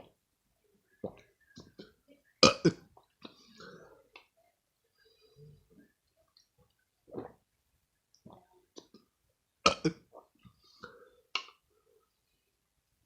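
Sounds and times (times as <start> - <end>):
person burping: 2.4 - 2.9, 9.6 - 10.2.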